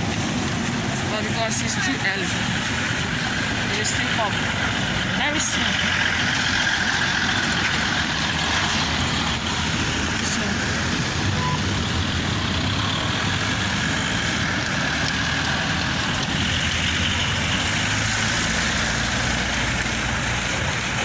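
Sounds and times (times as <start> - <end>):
heavy vehicle engine idling: 0.0 - 21.0
street traffic noise: 0.0 - 21.0.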